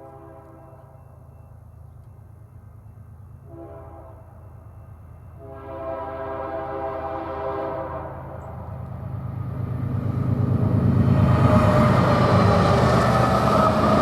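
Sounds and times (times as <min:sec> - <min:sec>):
train air horn blasts: 0:00.0 - 0:01.0, 0:03.4 - 0:04.4, 0:05.3 - 0:08.5
low train rumble: 0:00.0 - 0:14.0.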